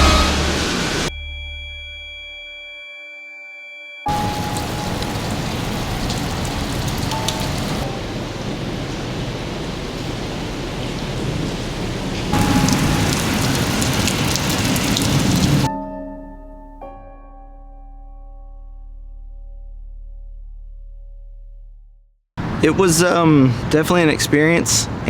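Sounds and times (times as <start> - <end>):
heavy rain pouring: 4.1 - 15.7
storm wind: 4.1 - 15.7.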